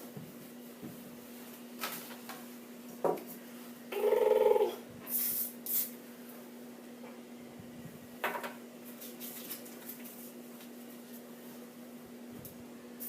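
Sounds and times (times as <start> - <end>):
steady low hum: 0.0 - 13.0
spray paint can hissing: 5.1 - 5.9.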